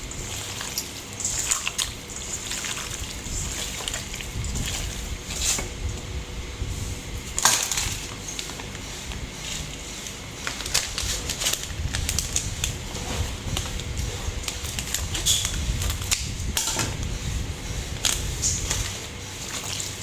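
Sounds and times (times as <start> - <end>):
kitchen food preparation knocks: 16.6 - 17.0.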